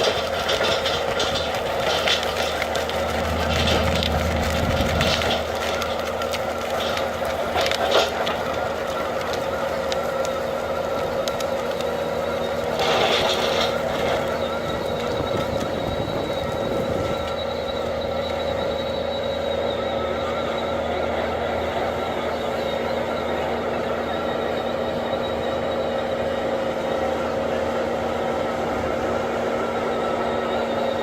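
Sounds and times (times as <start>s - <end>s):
forestry mulcher running: 0.0s - 31.0s.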